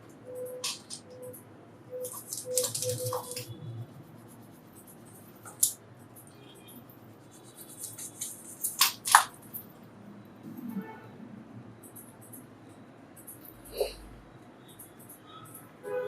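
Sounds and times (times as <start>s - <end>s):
scratching and scraping cork: 2.0s - 5.8s, 7.2s - 9.3s.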